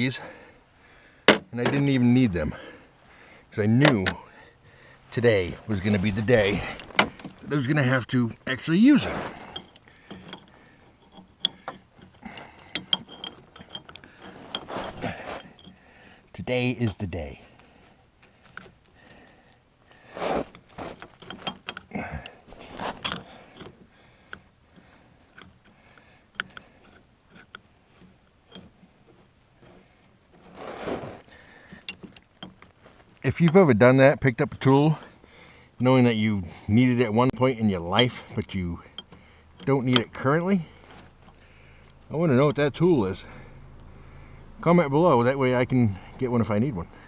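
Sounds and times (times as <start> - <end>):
rustle: 0.0 - 47.0
metallic clicks of hand tools: 9.5 - 15.9, 16.9 - 28.8, 37.9 - 42.1.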